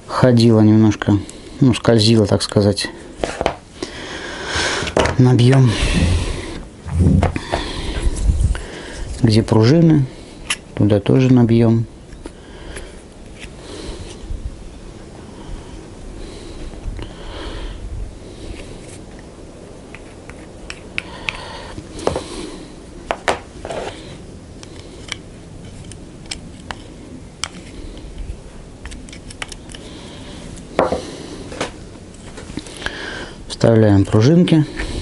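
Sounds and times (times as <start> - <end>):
low steady hiss: 0.0 - 35.0
hands clicking and scraping plastic: 19.9 - 21.4, 24.6 - 26.8, 27.4 - 29.9.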